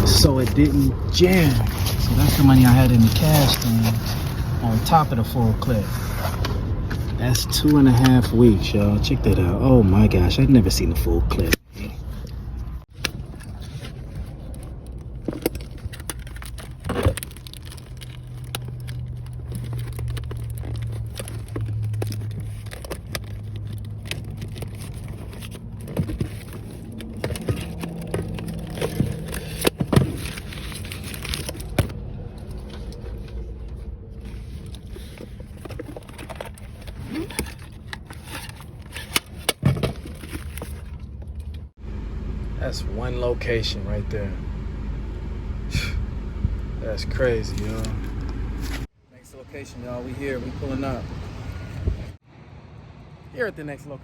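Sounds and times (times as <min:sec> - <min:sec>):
clicks and scrapes of handling: 0:00.3 - 0:05.0, 0:11.5 - 0:41.7
car engine idling: 0:40.1 - 0:48.9.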